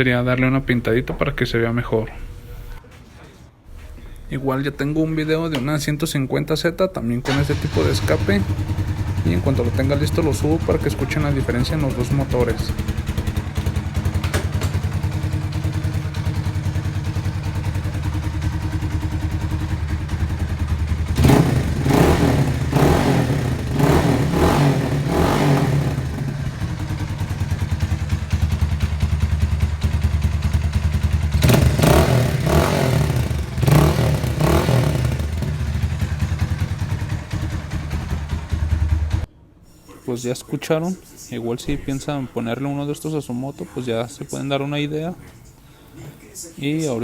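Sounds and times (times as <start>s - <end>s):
motorcycle throttle blips: 7.3s - 39.2s
motorcycle engine idling: 7.3s - 39.3s.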